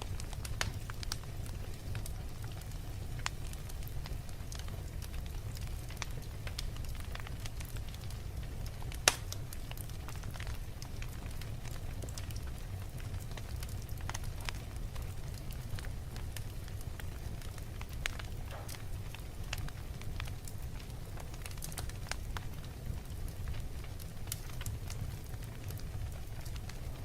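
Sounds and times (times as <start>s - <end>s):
fire crackling and popping: 0.0s - 27.0s
low fire rumble: 0.0s - 27.0s.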